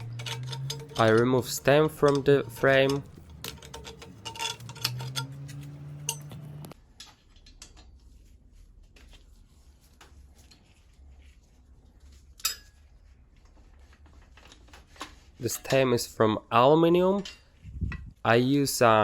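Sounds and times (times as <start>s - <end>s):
metallic clicks from hand tools: 0.0s - 6.8s.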